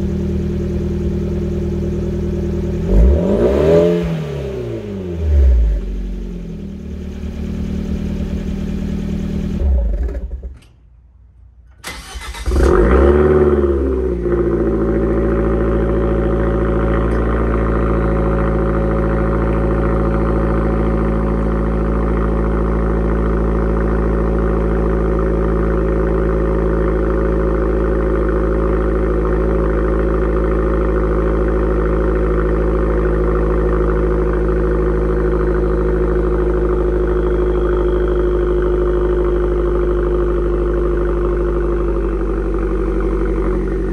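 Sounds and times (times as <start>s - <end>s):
car engine starting and idling: 0.0s - 43.9s.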